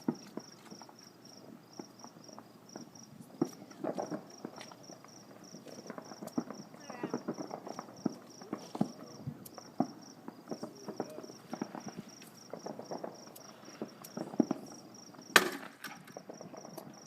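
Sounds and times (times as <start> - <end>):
cricket chirping: 0.0 - 17.0
distant fireworks popping and crackling: 0.0 - 17.0
sharp firework bang: 5.8 - 16.6.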